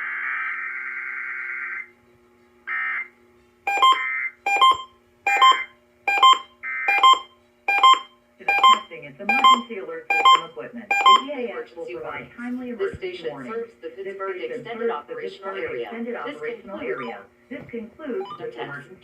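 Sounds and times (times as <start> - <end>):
short sharp electronic beeps: 3.7 - 11.2.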